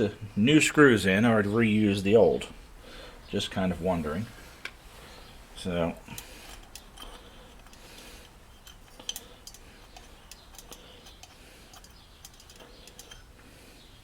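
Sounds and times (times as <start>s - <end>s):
small metal parts clicking: 6.0s - 13.4s.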